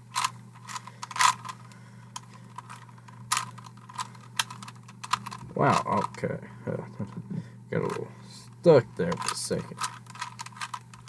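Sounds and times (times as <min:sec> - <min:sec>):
low steady hum: 0:00.0 - 0:11.0
puzzle cube plastic clicks: 0:00.1 - 0:01.6, 0:02.2 - 0:06.2, 0:09.0 - 0:11.0.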